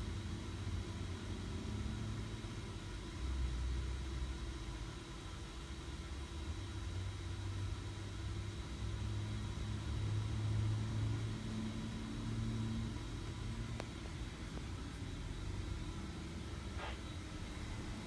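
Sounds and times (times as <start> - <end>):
vehicle engine humming: 12.8 - 18.0.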